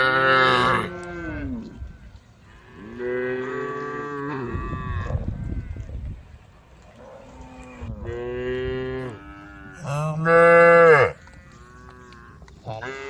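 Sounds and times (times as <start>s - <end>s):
cows mooing: 0.0s - 1.8s, 7.2s - 13.0s.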